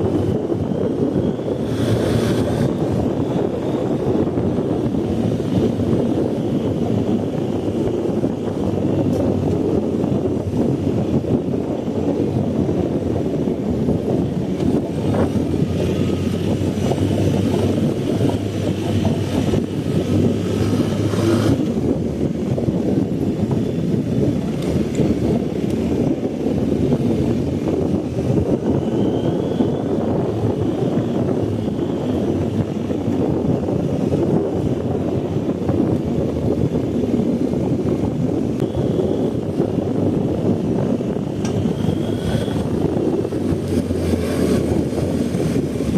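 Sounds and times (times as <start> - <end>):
motorcycle engine rumbling: 0.0 - 45.9.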